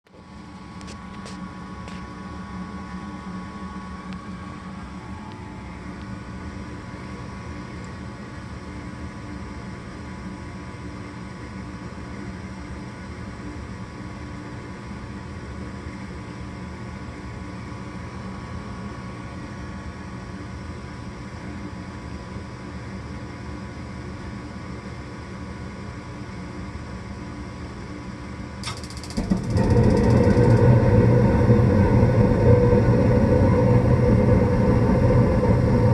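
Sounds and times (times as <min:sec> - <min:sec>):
furnace low hum: 0:00.1 - 0:35.9.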